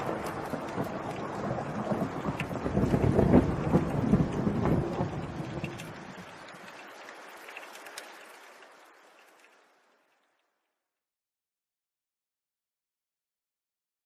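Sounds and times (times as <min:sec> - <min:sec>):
thunder rumble: 0:00.0 - 0:09.9
rain falling: 0:00.0 - 0:10.8.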